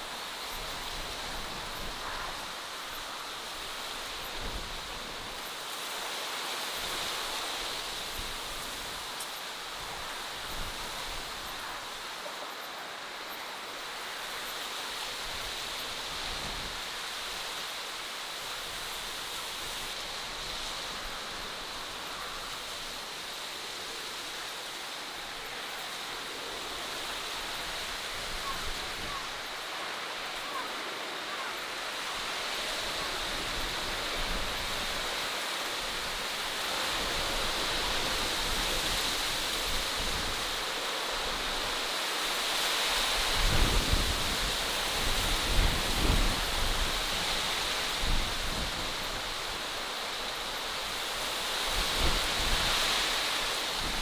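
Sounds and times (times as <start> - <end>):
rushing nature ambience: 0.0 - 54.0.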